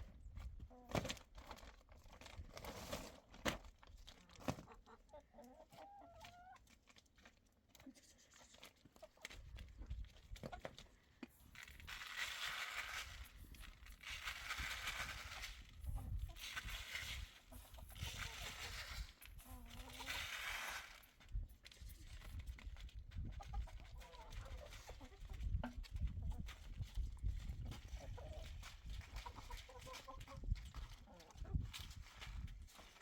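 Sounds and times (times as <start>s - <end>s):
chickens clucking: 4.3s - 6.8s, 15.2s - 21.4s, 22.0s - 32.5s.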